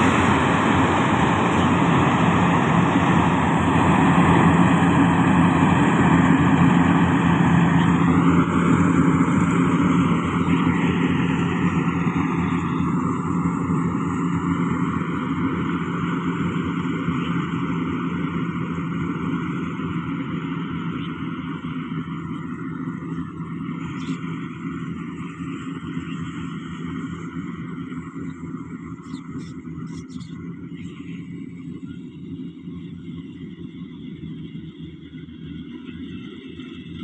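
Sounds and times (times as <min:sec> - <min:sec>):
combine harvester droning: 0:00.0 - 0:37.0.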